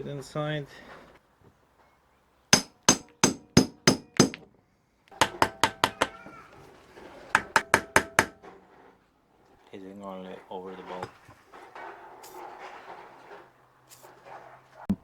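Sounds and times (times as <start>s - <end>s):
hammer striking metal driver: 2.6s - 4.5s, 5.2s - 6.3s, 7.3s - 8.4s.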